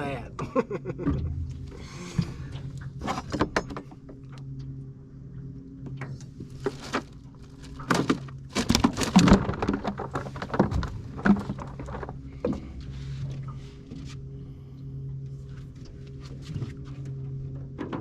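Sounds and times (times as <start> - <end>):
low electric hum: 0.0 - 18.0
fish and tackle knocking and rattling: 0.9 - 4.7, 5.8 - 14.1, 16.6 - 18.0.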